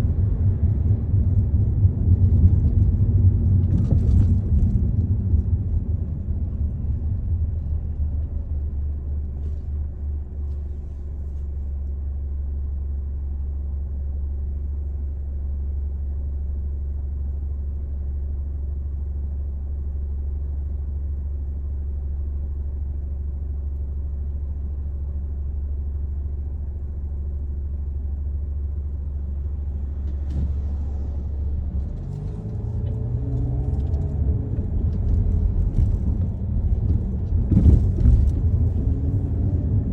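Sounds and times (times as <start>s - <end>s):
road rumble inside car: 0.0s - 39.9s
car engine accelerating: 29.2s - 39.9s.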